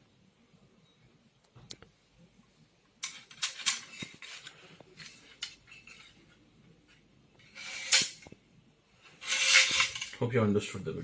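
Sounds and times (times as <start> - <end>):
metal hardware clinking: 3.0 - 6.2, 9.2 - 10.2.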